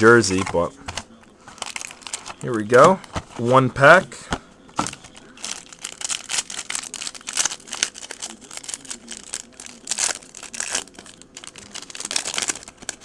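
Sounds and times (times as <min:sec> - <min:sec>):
wrapper tearing and crinkling: 0:01.6 - 0:02.5, 0:04.8 - 0:13.0.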